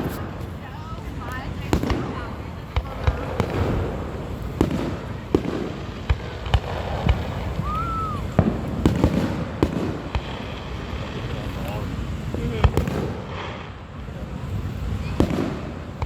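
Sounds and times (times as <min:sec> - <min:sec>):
fireworks bangs: 0:00.0 - 0:16.0
fireworks crackling: 0:00.0 - 0:16.0
firework whistle: 0:03.2 - 0:13.6.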